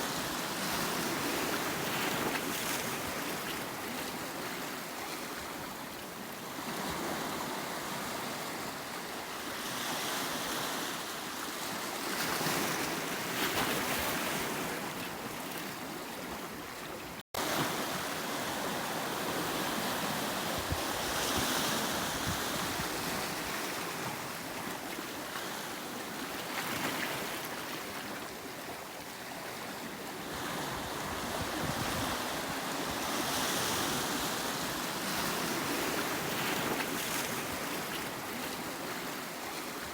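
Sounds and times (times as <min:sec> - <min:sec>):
sea surf breaking on shore: 0:17.4 - 0:28.1, 0:29.8 - 0:39.8.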